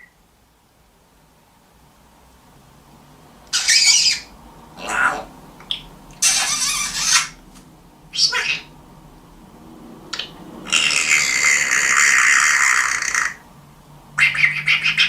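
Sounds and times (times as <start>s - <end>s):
parrot squawking: 3.5s - 7.4s, 8.1s - 8.7s, 10.1s - 13.5s, 14.2s - 15.0s.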